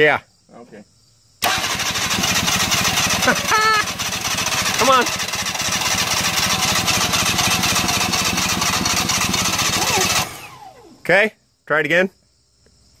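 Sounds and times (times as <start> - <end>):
engine cranking on starter: 1.4 - 11.0.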